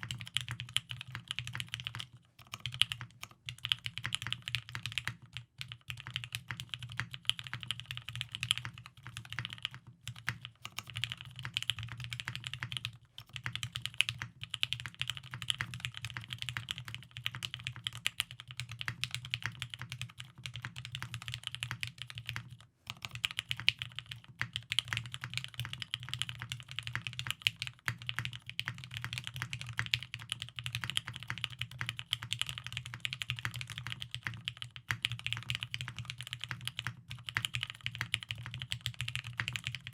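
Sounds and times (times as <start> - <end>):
typing on mechanical keyboard: 0.0 - 39.9.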